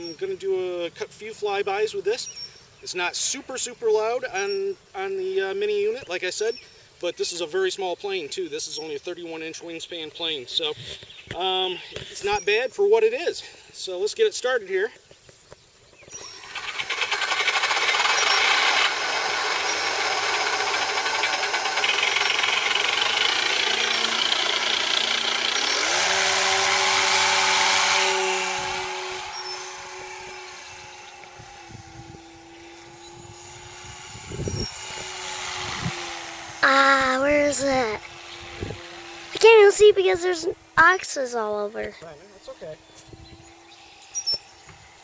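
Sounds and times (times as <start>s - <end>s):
model plane propeller and motor whir: 15.9s - 45.0s
simulated piston engine sound: 16.2s - 31.4s.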